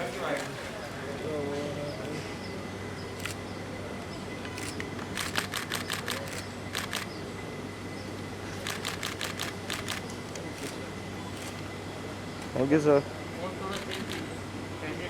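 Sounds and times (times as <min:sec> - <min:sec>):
steady background hum: 0:00.0 - 0:15.0
camera shutter clicks: 0:03.2 - 0:03.4, 0:04.6 - 0:07.2, 0:08.6 - 0:10.8, 0:11.4 - 0:11.6, 0:13.7 - 0:14.3.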